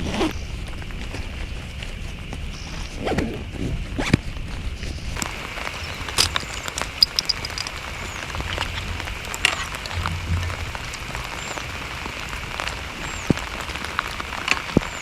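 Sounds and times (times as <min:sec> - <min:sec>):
close rustling: 0:05.2 - 0:12.0
rain falling: 0:05.2 - 0:15.0
handling clicks and knocks: 0:06.0 - 0:10.6.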